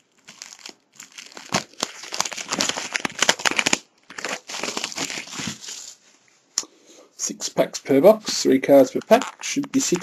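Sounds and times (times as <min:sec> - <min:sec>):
plastic wrapping crackling: 0:00.0 - 0:06.0.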